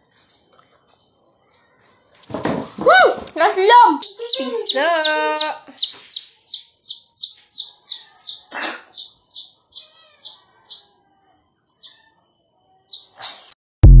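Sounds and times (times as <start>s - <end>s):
high-pitched bird chirps: 3.9s - 10.9s, 11.7s - 13.6s.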